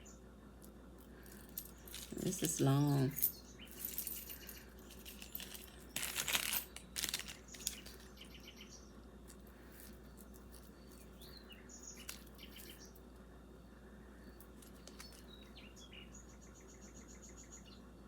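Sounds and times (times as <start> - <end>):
beaded necklace clinking: 0.6 - 8.4, 9.2 - 13.0, 14.3 - 15.6.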